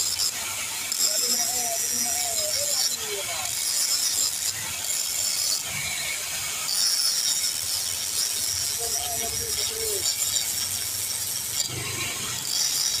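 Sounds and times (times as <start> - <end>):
arc welding crackling sizzle: 0.0 - 13.0.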